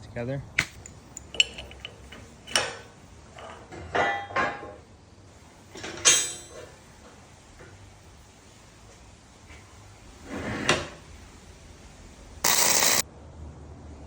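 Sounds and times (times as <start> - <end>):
metal pieces clanking: 0.6 - 2.8, 12.4 - 13.0.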